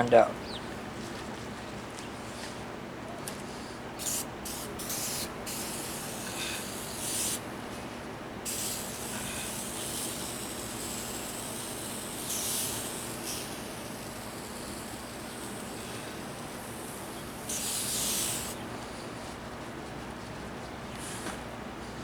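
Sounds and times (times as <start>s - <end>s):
aerosol can spraying: 4.0s - 7.5s, 8.5s - 18.6s.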